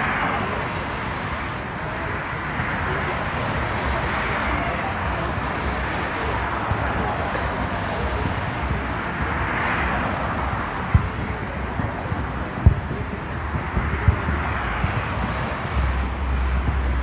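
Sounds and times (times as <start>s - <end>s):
wind rumbling on microphone: 0.0s - 17.0s
dull low thumps: 10.4s - 17.0s.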